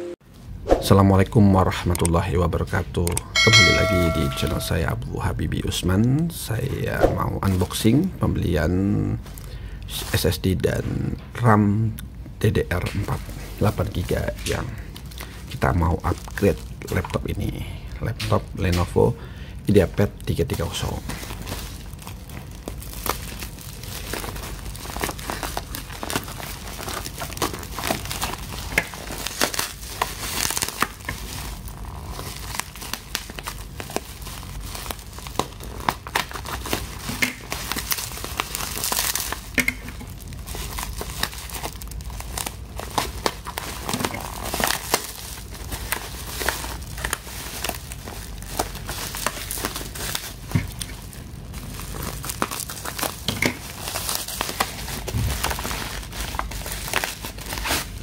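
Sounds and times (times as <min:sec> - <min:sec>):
packaging crinkling and tearing: 0:12.8 - 0:17.6, 0:19.7 - 0:58.0.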